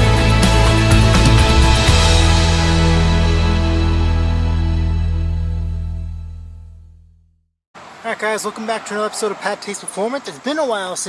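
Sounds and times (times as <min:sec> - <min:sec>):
drum beat: 0:00.0 - 0:02.7.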